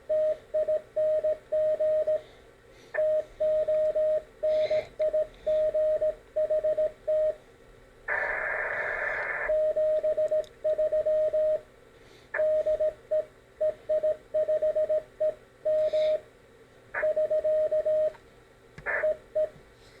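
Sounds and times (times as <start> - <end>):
morse code tone: 3.0 - 7.4, 12.4 - 15.0, 17.0 - 18.2.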